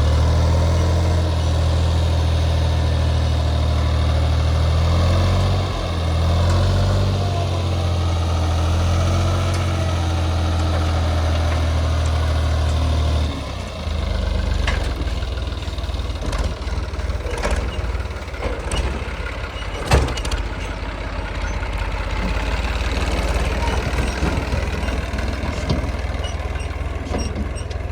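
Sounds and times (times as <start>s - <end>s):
heavy diesel engine running: 0.0s - 27.9s
sharp clanks and knocks: 16.2s - 20.9s.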